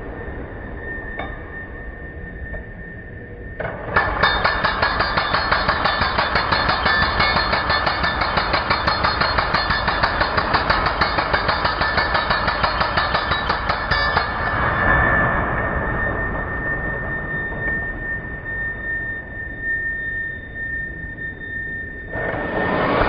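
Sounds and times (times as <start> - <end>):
demolition hammer hammering: 4.0 - 14.5.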